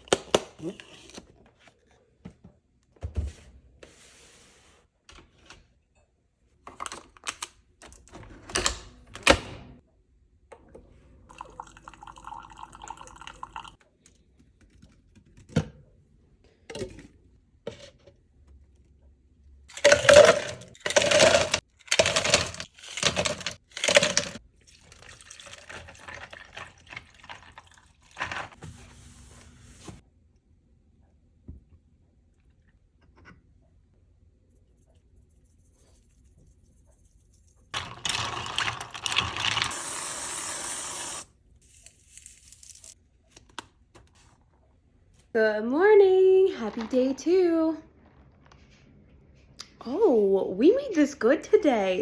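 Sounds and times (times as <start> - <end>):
liquid pouring: 11.3 - 13.8, 23.8 - 28.4, 37.8 - 41.2.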